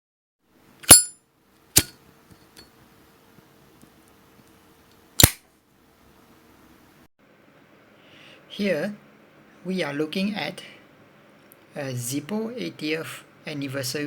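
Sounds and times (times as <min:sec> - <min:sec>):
metal lighter lid clicking: 0:00.8 - 0:01.1.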